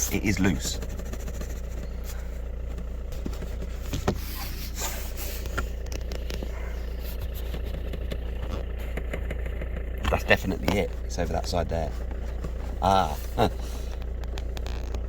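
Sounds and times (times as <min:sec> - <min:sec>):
car engine idling: 0:00.0 - 0:15.0
knocks and rubs on pipe: 0:00.4 - 0:05.0.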